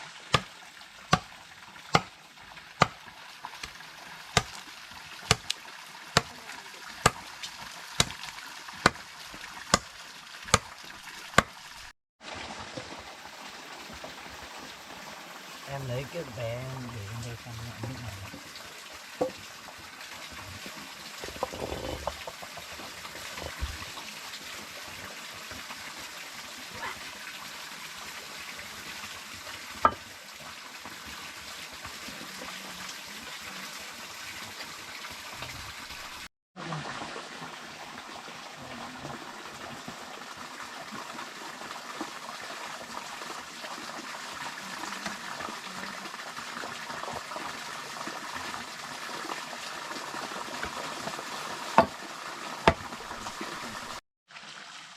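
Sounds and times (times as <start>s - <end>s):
running water: 0.0s - 54.9s.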